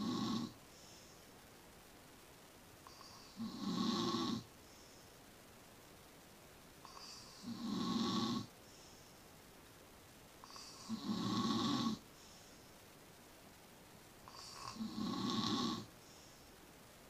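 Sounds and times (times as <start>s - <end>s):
person snoring: 0.0s - 0.6s, 2.9s - 4.5s, 6.8s - 8.5s, 10.4s - 12.0s, 14.3s - 15.9s.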